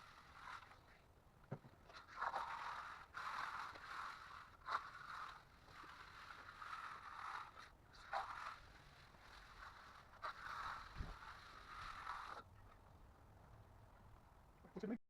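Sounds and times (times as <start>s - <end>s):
tool scraping wet concrete: 0.0s - 1.1s, 1.8s - 12.5s.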